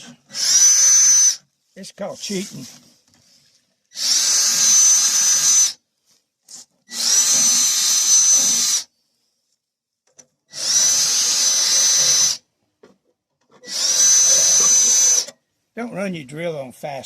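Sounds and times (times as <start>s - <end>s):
electric drill whine: 0.3s - 1.4s, 3.9s - 5.8s, 6.9s - 8.9s, 10.5s - 12.4s, 13.6s - 15.3s.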